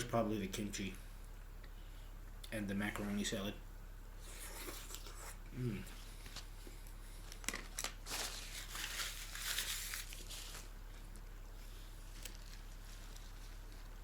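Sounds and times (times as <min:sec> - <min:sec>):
plastic packaging crinkling: 0:07.2 - 0:11.3, 0:11.9 - 0:14.0.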